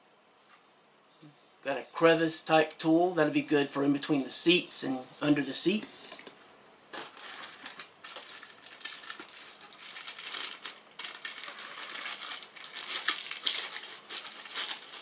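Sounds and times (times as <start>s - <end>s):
packaging crinkling and rustling: 6.9s - 15.0s.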